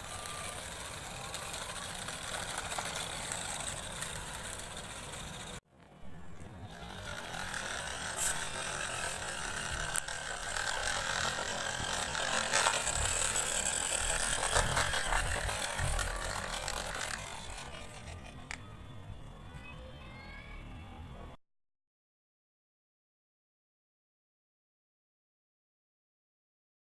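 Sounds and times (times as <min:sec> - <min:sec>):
toy car motor whirring: 0:00.0 - 0:05.6, 0:06.2 - 0:18.8.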